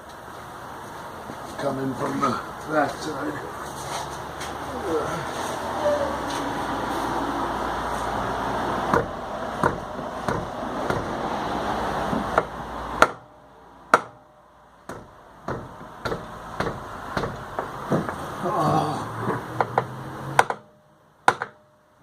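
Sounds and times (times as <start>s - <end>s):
steady background hum: 0.0s - 22.0s
hammer striking metal wheel: 8.9s - 11.2s, 12.2s - 13.3s, 13.9s - 14.3s, 14.9s - 18.2s, 19.4s - 21.8s.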